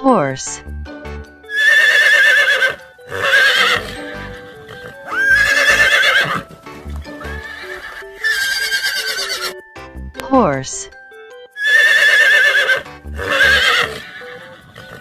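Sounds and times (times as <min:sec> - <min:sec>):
light background music: 0:00.0 - 0:15.0
horse whinnying: 0:01.5 - 0:09.6, 0:11.6 - 0:15.0
hoof clops: 0:01.6 - 0:09.5, 0:11.7 - 0:15.0.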